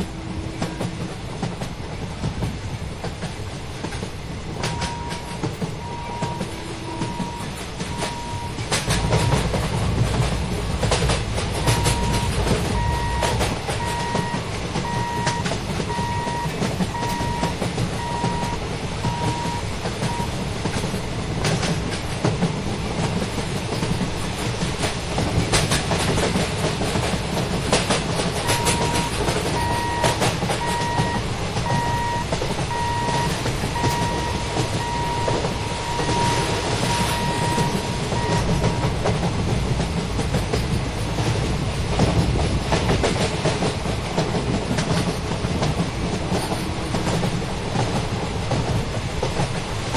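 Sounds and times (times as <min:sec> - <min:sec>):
train coaches rumbling: 0:00.0 - 0:49.9
electronic beeping: 0:28.5 - 0:38.8.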